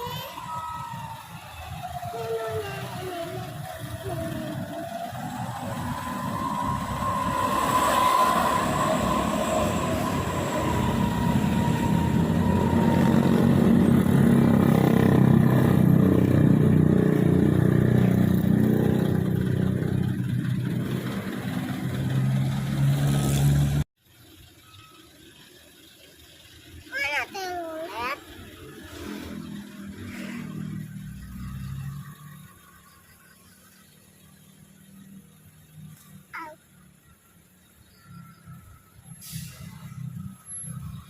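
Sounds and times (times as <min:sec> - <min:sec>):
bus diesel engine passing: 0:00.0 - 0:41.0
high rising whine: 0:02.8 - 0:23.6.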